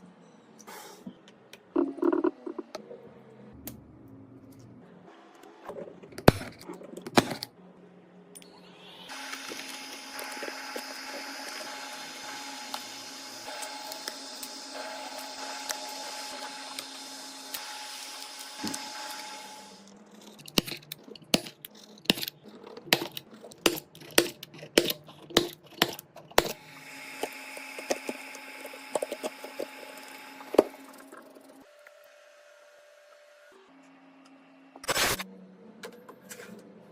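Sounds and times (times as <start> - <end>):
machine buzzing with high whine: 8.6 - 20.0, 26.6 - 35.2.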